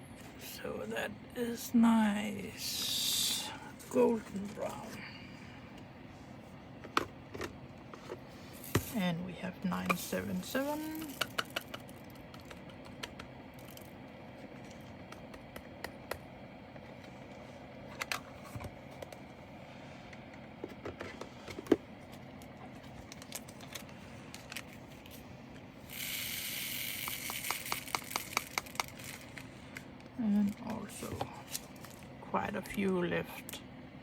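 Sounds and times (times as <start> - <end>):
small resin beads clicking: 26.0 - 29.2.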